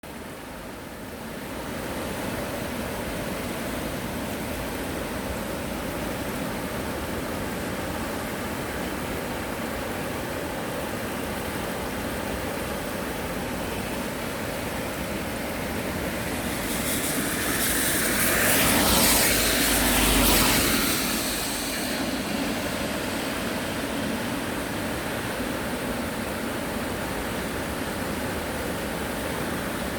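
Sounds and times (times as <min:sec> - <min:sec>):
mountain stream rushing: 0:00.1 - 0:29.9
vehicle passing by: 0:15.4 - 0:25.4.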